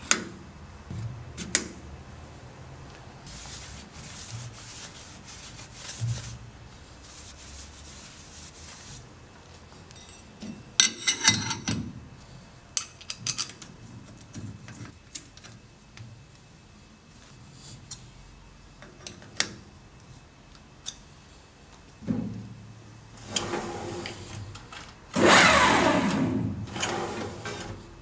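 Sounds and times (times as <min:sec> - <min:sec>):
steady hiss with low hum: 0:00.0 - 0:28.0.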